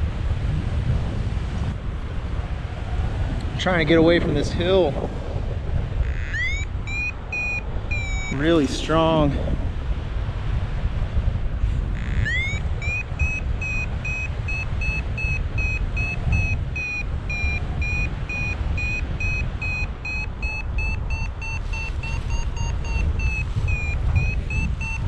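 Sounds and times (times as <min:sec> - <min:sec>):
wind buffeting microphone: 0:00.0 - 0:25.0
variometer beeping: 0:06.0 - 0:09.2, 0:11.9 - 0:25.0.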